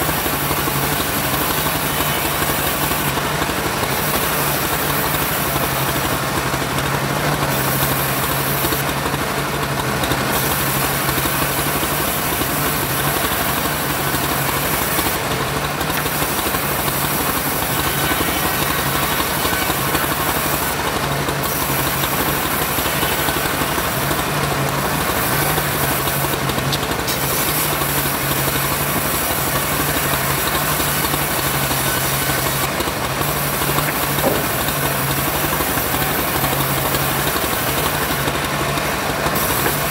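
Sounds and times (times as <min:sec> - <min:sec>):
bandsaw cutting hiss: 0:00.0 - 0:09.1, 0:10.1 - 0:39.9
bandsaw mechanical drone: 0:00.0 - 0:39.9.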